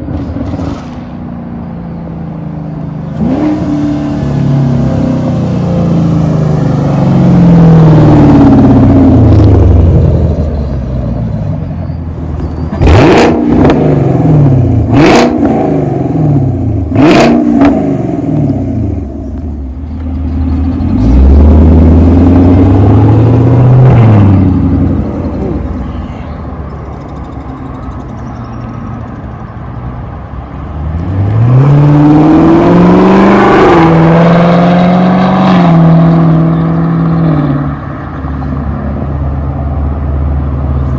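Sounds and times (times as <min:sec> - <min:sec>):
loud car engine revving: 0:03.1 - 0:11.4, 0:12.2 - 0:25.8, 0:30.7 - 0:37.9.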